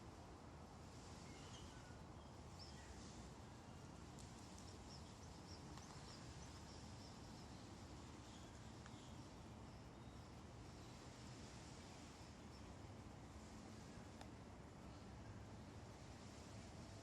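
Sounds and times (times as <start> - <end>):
faint outdoor background noise: 0.0 - 17.0.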